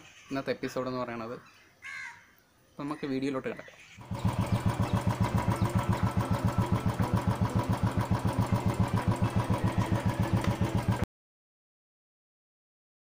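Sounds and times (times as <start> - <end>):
motorcycle engine idling: 4.0 - 11.0.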